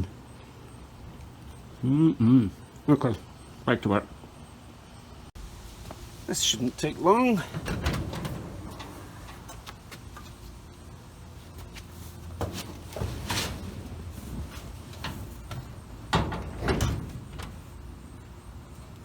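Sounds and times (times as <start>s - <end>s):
knocks and clunks: 7.4s - 10.4s, 12.3s - 18.2s.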